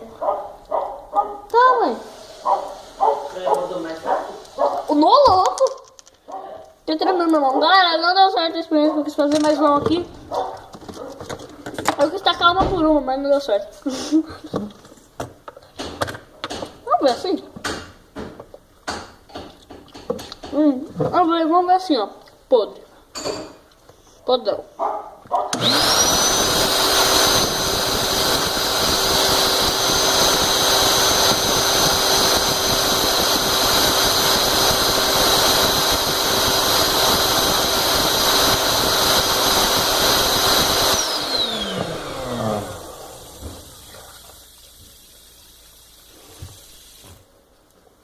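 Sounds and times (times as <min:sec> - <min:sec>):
air pump whining: 0:25.5 - 0:44.1.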